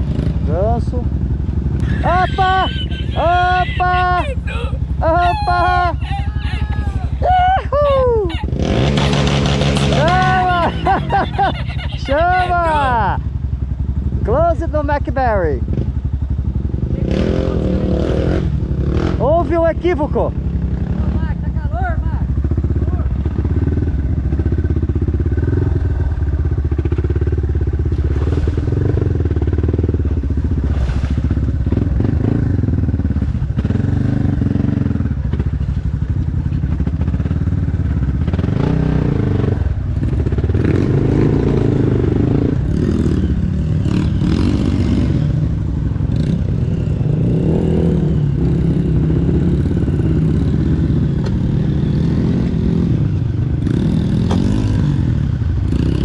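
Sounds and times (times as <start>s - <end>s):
dirt bike engine revving: 0.0s - 7.2s, 8.2s - 13.3s, 14.1s - 36.0s, 36.8s - 56.0s.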